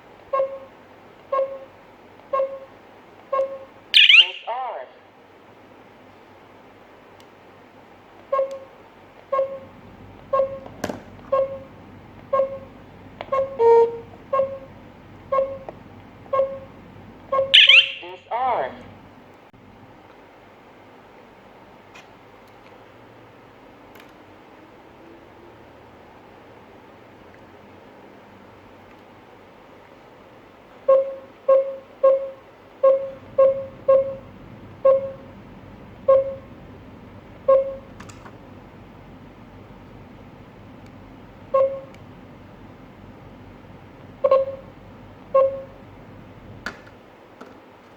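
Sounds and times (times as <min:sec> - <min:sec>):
alarm panel beeping: 0:00.3 - 0:00.7, 0:01.3 - 0:04.6, 0:08.3 - 0:08.7, 0:09.3 - 0:15.7, 0:16.3 - 0:18.3, 0:30.9 - 0:35.4, 0:36.0 - 0:36.6, 0:37.4 - 0:38.2, 0:41.5 - 0:42.0, 0:44.2 - 0:45.8
alarm panel key beeps: 0:01.3 - 0:01.7, 0:02.3 - 0:02.7, 0:03.3 - 0:04.5, 0:08.3 - 0:08.7, 0:17.3 - 0:18.2, 0:36.1 - 0:36.4, 0:37.5 - 0:38.1, 0:41.5 - 0:42.0, 0:45.4 - 0:45.8.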